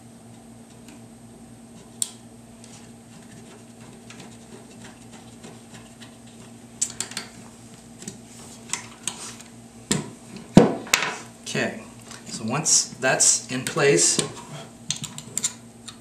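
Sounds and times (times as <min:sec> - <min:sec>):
metal parts clicking and tapping: 0:06.8 - 0:07.4, 0:14.9 - 0:16.0.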